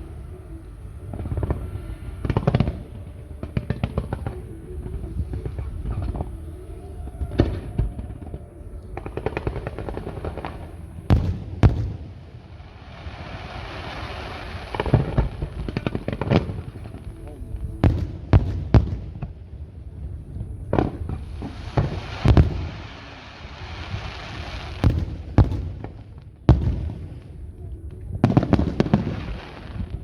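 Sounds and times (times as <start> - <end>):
fireworks crackling hiss: 0.0 - 30.0
fireworks cracking and popping: 7.3 - 19.5, 20.4 - 30.0
loud fireworks bangs: 9.0 - 17.1, 20.7 - 27.4.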